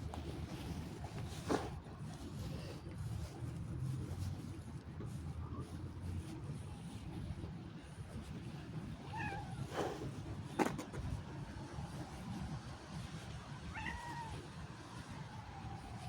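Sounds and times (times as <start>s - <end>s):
cat meowing: 9.1s - 9.7s, 13.7s - 14.4s.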